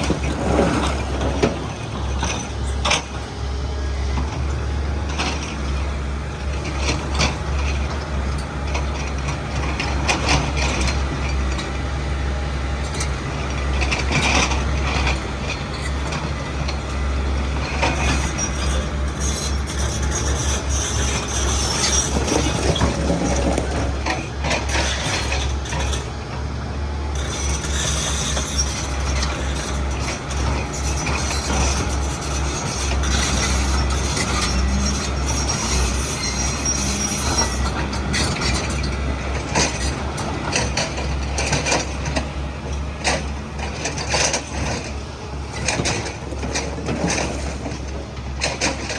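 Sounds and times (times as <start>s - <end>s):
excavator diesel engine running: 0.0s - 48.9s.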